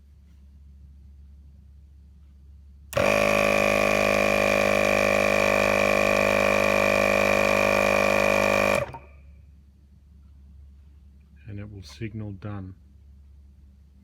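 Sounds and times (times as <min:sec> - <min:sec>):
air compressor running: 0:02.9 - 0:09.3.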